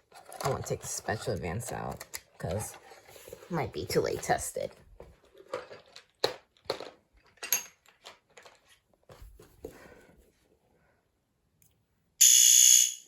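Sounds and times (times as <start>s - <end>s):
handling clicks and knocks: 0.0s - 8.7s.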